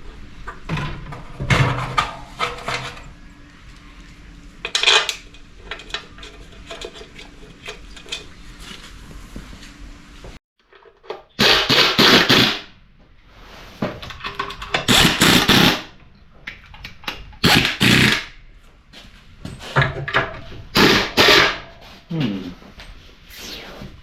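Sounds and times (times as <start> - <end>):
power tool driving bolts: 11.4 - 12.7, 14.7 - 15.9, 17.4 - 18.4, 20.8 - 21.6.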